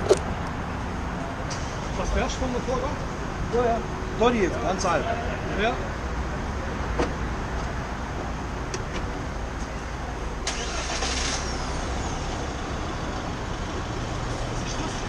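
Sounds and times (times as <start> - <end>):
vehicle engine rumbling: 0.0 - 15.0.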